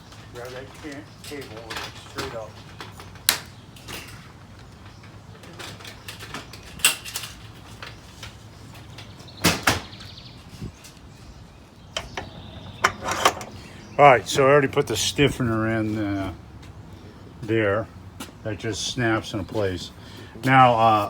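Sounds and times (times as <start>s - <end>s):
garage door hardware knocks and clanks: 12.0s - 13.6s.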